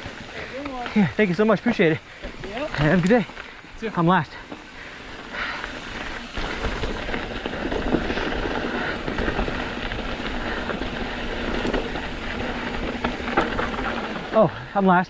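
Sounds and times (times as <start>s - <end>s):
bike rattling and clicking: 0.0s - 15.0s
bike tyres rumbling on rock: 0.0s - 15.0s.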